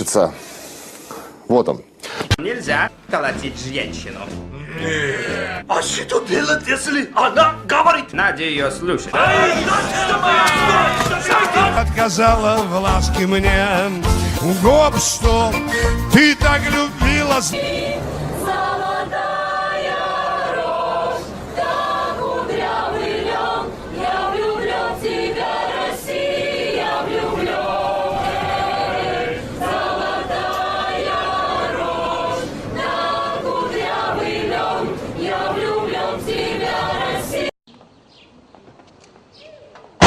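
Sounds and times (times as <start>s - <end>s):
choir singing: 9.0s - 37.5s.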